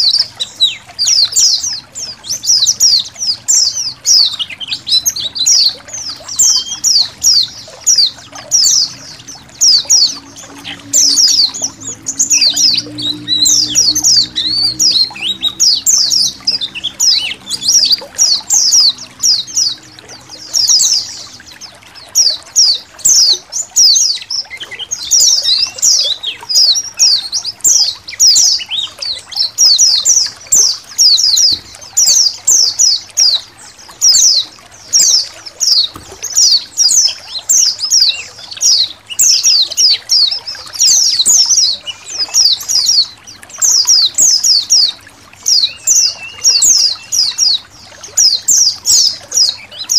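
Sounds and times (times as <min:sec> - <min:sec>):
birds twittering: 0:00.0 - 0:49.9
trickling water: 0:00.0 - 0:49.9.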